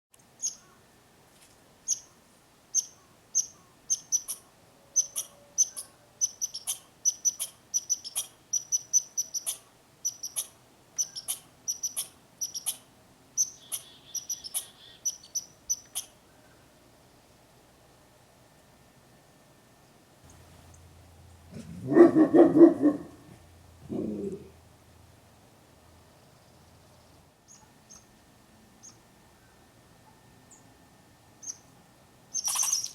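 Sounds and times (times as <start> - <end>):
squirrel chirping: 0.4 - 0.7, 1.8 - 2.1, 2.7 - 16.2, 27.5 - 28.1, 31.4 - 31.7, 32.3 - 32.9.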